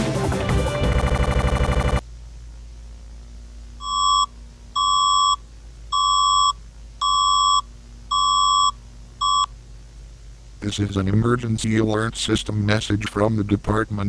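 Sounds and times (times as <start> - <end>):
faint low hum: 0.6 - 14.0
buzzy alert beeps: 0.8 - 2.0.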